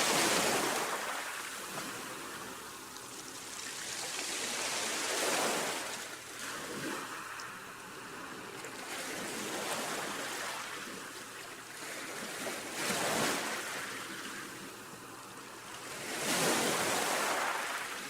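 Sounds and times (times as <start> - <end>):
sea waves washing onto shore: 0.0 - 18.0.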